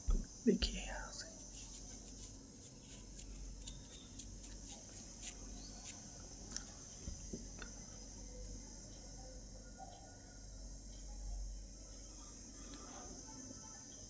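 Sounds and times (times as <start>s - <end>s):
high-pitched hiss: 0.0s - 6.8s.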